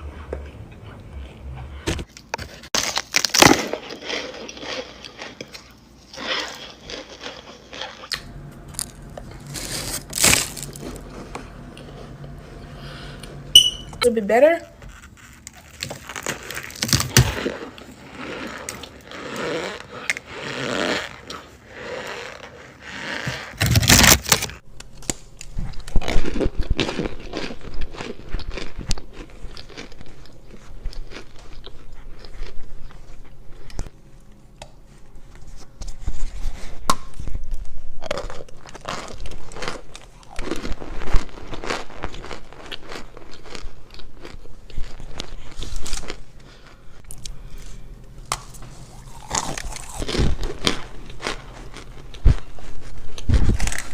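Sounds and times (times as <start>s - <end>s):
crunchy chewing: 2.1s - 13.4s, 25.1s - 33.9s, 37.5s - 53.9s.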